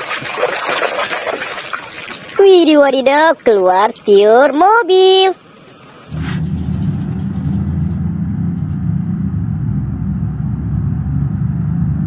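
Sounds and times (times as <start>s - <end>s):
low mechanical rumble: 5.7s - 12.0s.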